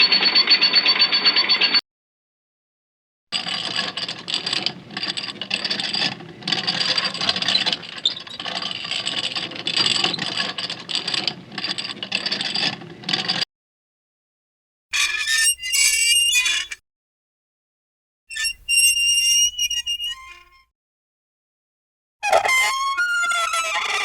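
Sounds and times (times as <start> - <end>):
rattling scraping mechanical noise: 3.4 - 13.4.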